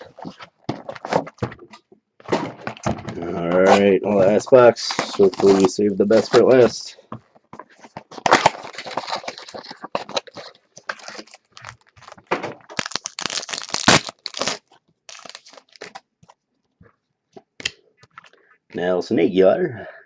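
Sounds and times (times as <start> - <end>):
cards clicking and shuffling: 0.0 - 6.8
plastic wrapping torn and crinkled: 2.3 - 6.7, 8.1 - 16.0.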